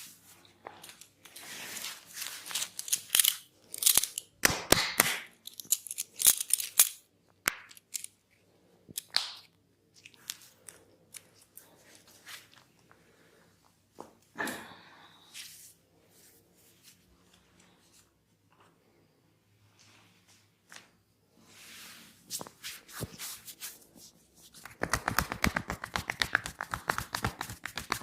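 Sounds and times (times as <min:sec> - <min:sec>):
hands cracking and slapping on skin: 0:04.4 - 0:05.4, 0:07.4 - 0:07.8, 0:09.0 - 0:11.3, 0:24.6 - 0:28.0.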